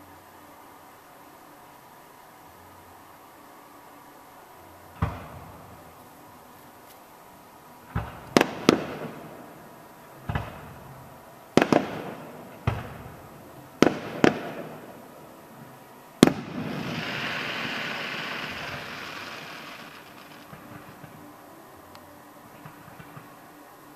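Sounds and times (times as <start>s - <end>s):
fireworks hissing: 0.0s - 23.9s
fireworks bursting with bangs: 4.8s - 7.1s, 7.7s - 23.9s.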